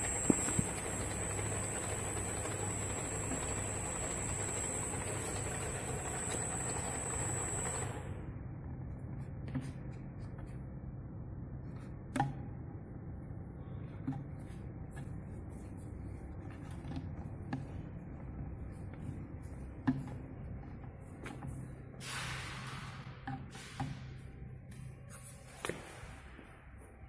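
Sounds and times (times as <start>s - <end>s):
machine motor hum: 0.0s - 8.4s.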